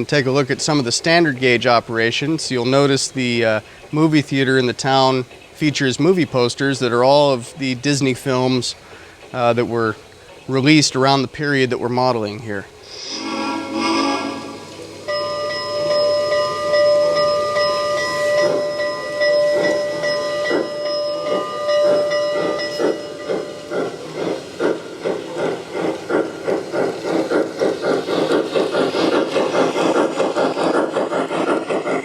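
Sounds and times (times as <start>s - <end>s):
model steam locomotive chuffing: 0.0s - 32.0s
steady whistle-like tone: 12.8s - 26.6s.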